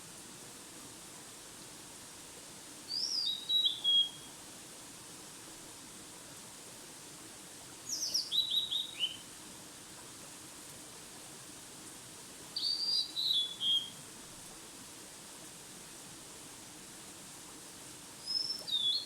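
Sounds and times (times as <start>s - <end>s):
faint steady hiss: 0.0s - 19.0s
songbird singing: 2.9s - 4.3s, 7.9s - 9.2s, 12.6s - 13.9s, 18.3s - 19.0s.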